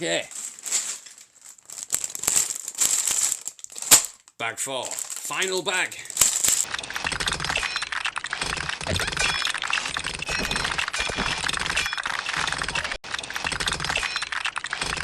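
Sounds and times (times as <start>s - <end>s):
plastic bricks clattering: 0.3s - 7.2s.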